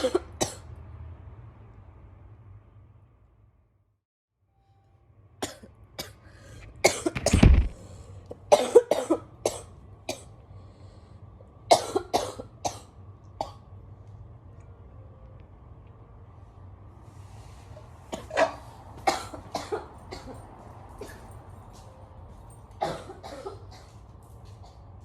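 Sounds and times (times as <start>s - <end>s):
girl coughing: 0.0s - 0.6s, 5.4s - 6.2s, 6.8s - 7.6s, 8.5s - 10.3s, 11.7s - 13.6s, 18.1s - 20.4s, 21.0s - 21.2s, 22.8s - 23.9s.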